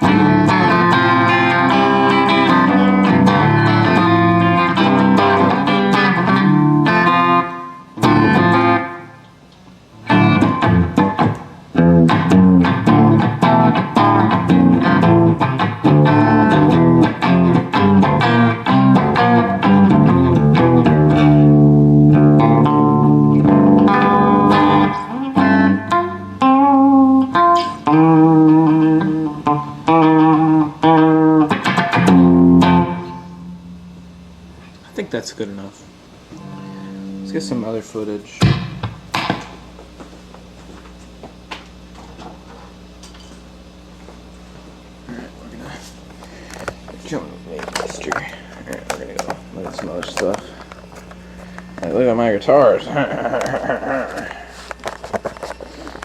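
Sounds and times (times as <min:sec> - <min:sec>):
guitar playing: 0:00.0 - 0:09.3, 0:09.9 - 0:34.5, 0:36.3 - 0:37.8.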